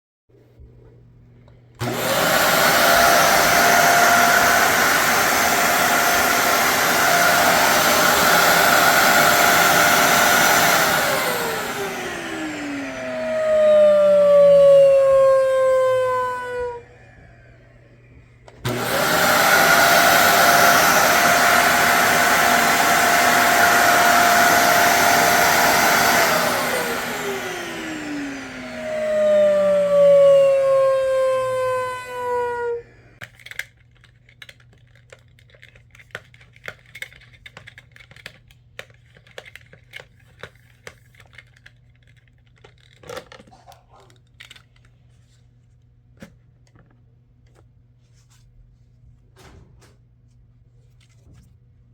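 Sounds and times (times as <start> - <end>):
vacuum cleaner motor whine: 1.8 - 33.2
faint clicks and handling noises: 33.2 - 51.8.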